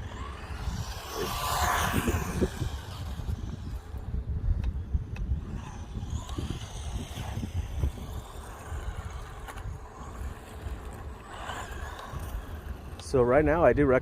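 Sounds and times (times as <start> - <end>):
electric toy car running: 0.0 - 14.0
wind rumbling on microphone: 0.0 - 14.0.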